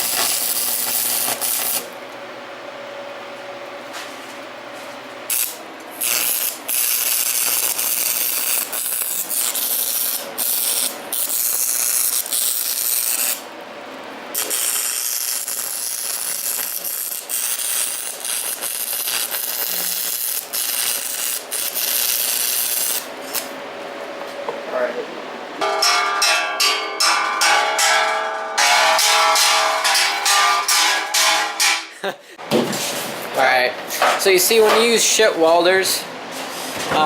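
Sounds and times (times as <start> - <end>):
welding arc crackling and hissing: 0.0 - 2.0, 5.3 - 13.5, 14.3 - 23.6.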